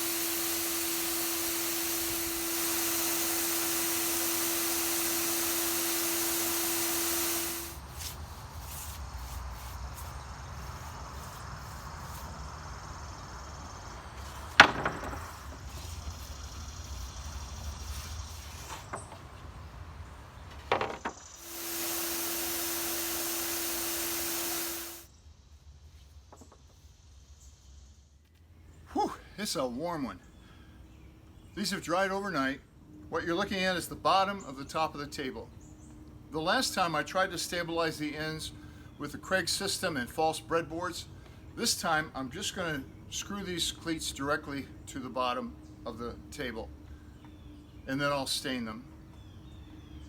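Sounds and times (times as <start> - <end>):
small power tool running: 0.0 - 18.8, 20.8 - 25.1
wood being handled knocks: 14.4 - 15.8.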